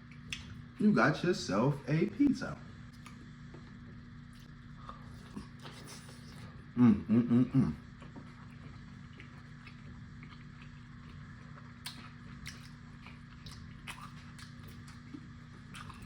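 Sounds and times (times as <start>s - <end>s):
steady low hum: 0.0s - 16.0s
close-up chewing: 7.8s - 16.0s.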